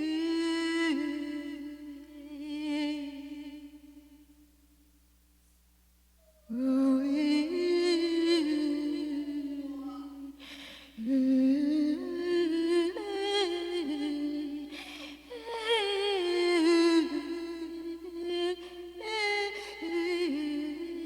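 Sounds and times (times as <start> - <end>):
person humming a melody: 6.4 - 21.0.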